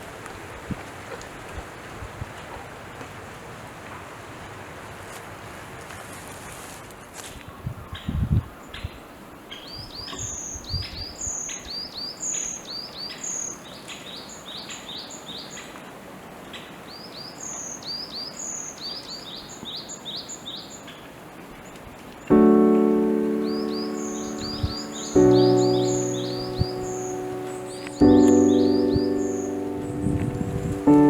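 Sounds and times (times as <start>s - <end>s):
music: 22.3s - 31.0s
soft low knocks: 22.3s - 31.0s
songbirds chirping: 22.3s - 31.0s.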